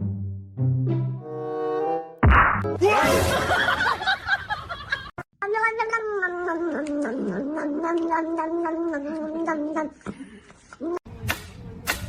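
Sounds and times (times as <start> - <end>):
cat yowling: 5.4 - 9.9.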